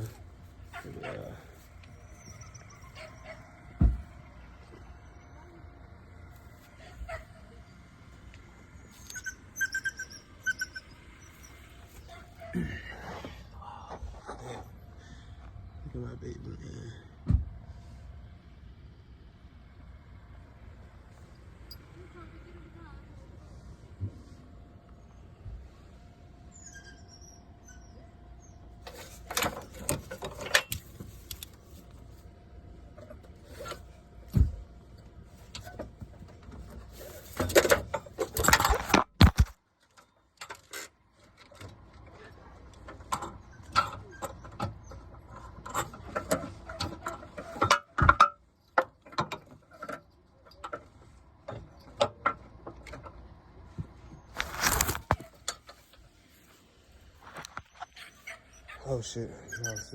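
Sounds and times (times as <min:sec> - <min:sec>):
metal tools clinking: 0:28.9 - 0:31.6.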